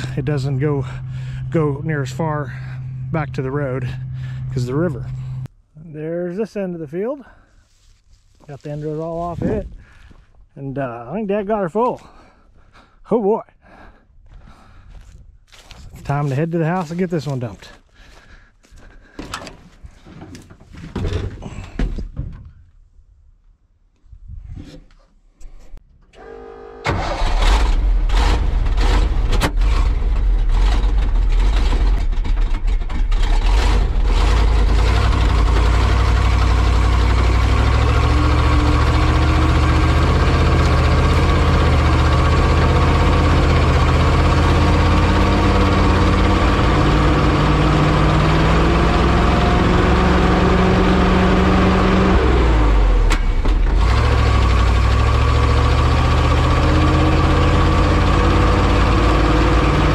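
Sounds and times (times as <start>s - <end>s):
truck engine starting and revving: 0.0s - 5.5s, 26.1s - 59.9s.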